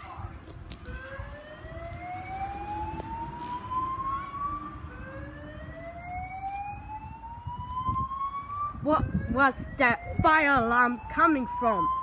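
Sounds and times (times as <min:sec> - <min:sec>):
fire alarm whoop tone: 0:05.9 - 0:12.0.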